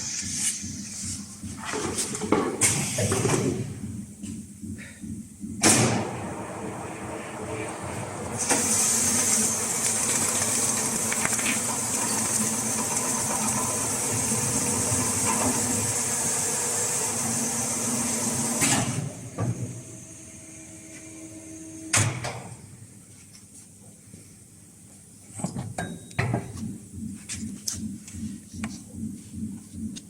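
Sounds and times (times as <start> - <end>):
machine hissing: 5.7 - 19.0.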